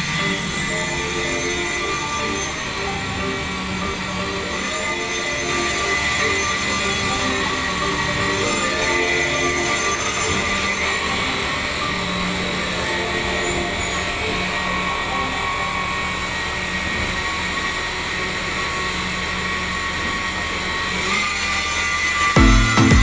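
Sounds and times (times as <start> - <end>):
concrete pump engine running: 0.0 - 23.0
steady whining tones: 0.0 - 23.0
music with a heavy beat: 22.4 - 23.0.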